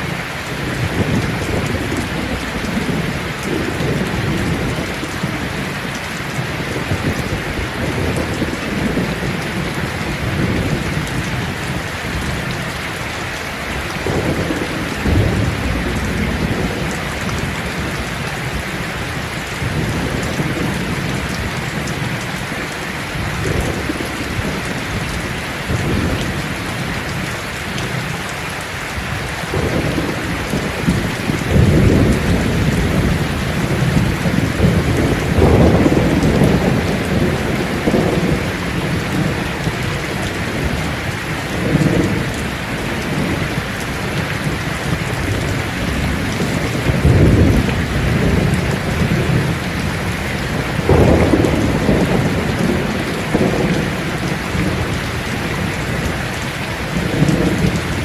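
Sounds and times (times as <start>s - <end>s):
rain falling on leaves: 0.0s - 58.0s
low rolling thunder: 0.6s - 12.5s, 13.8s - 22.3s, 23.1s - 28.0s, 29.1s - 58.0s.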